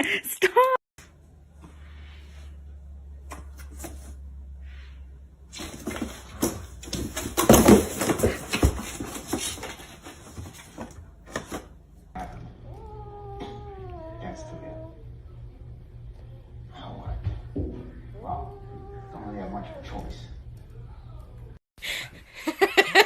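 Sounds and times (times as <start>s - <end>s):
low steady hum: 1.0s - 22.7s
cat scuffling and hissing: 1.6s - 11.8s.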